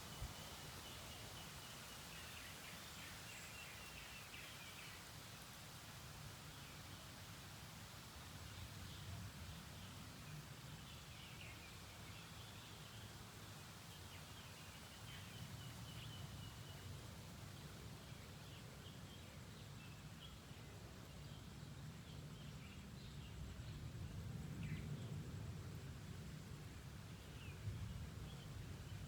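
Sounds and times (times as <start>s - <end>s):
rain hiss: 0.0s - 29.0s.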